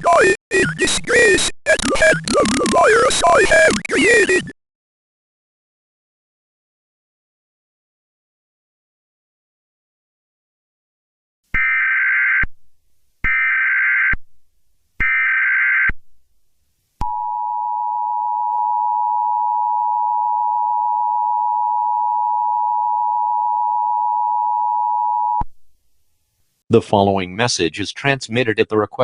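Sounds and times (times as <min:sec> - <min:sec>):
buzzy digital data squawks: 0:00.0 - 0:04.5.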